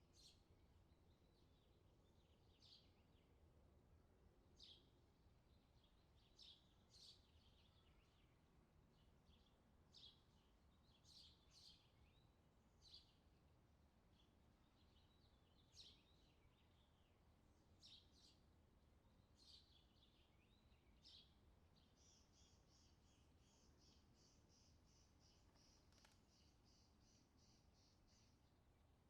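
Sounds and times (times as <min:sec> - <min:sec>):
faint bird chirps: 0:19.3 - 0:28.7.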